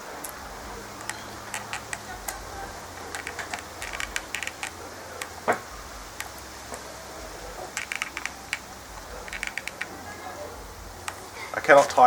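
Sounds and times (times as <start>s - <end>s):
small metallic clicks: 1.0s - 2.4s, 3.0s - 5.4s, 7.7s - 10.0s.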